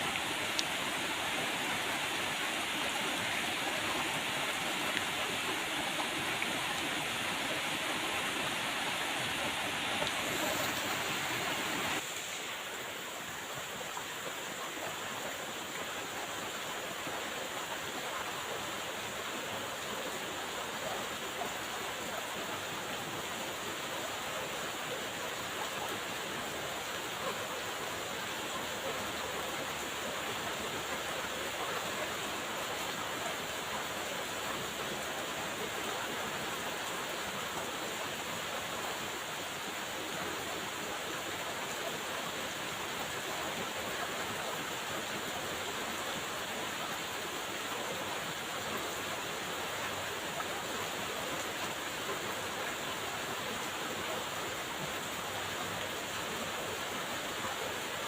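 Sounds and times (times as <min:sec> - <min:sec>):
rain falling: 0:00.0 - 0:20.2.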